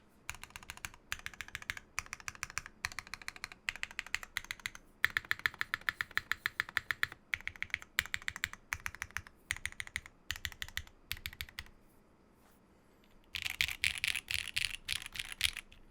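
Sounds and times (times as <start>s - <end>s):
mechanical keyboard typing: 0.3s - 11.7s, 13.3s - 15.8s.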